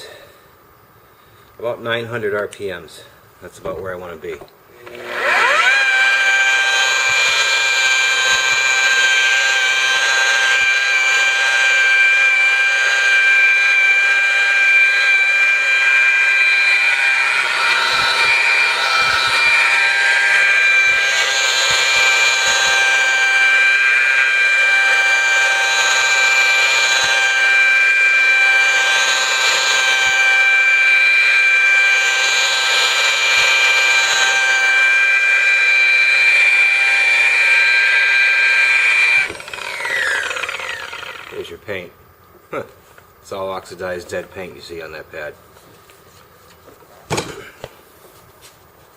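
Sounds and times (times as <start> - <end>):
polisher motor whine: 4.7 - 41.5.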